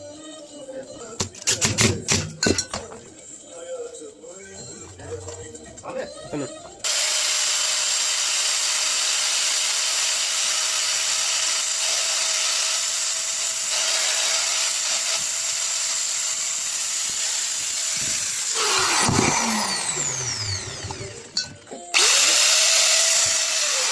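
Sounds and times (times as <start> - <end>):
angle grinder whining: 6.8 - 23.9.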